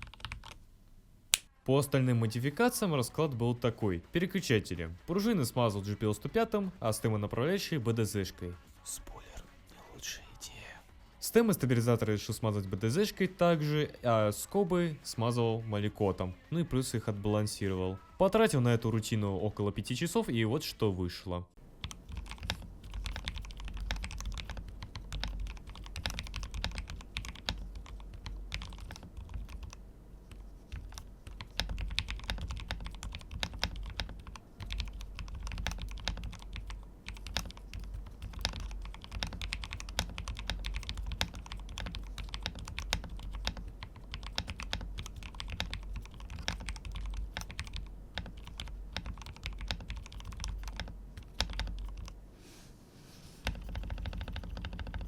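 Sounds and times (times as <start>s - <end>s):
fast mechanical keyboard typing: 0.0s - 0.6s, 21.8s - 52.2s, 53.4s - 55.0s.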